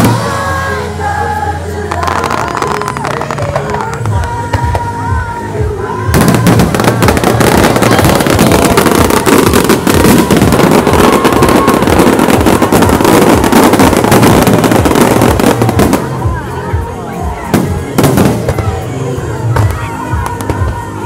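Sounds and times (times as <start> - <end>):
fireworks crackling and banging: 0.0 - 0.8, 1.8 - 21.0
music: 0.0 - 21.0.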